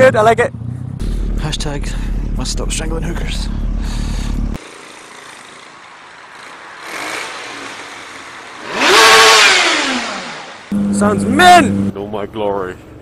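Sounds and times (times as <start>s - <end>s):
road and engine noise: 0.0s - 13.0s
vehicle passing at speed: 5.3s - 12.0s.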